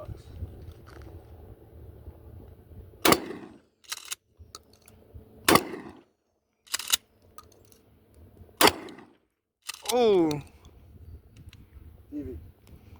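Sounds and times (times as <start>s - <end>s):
gunshots with echo: 3.0s - 3.6s, 5.5s - 6.0s, 8.6s - 9.1s.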